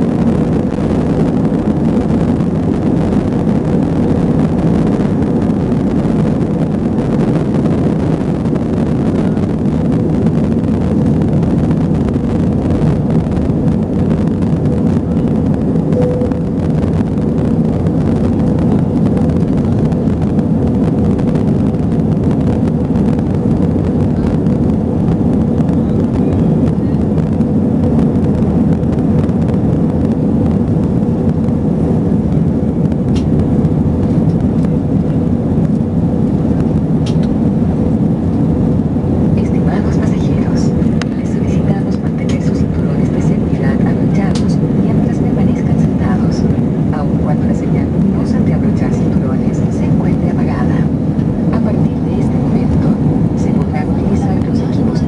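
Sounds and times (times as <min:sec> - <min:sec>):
jet engines at takeoff power: 0:00.0 - 0:55.0.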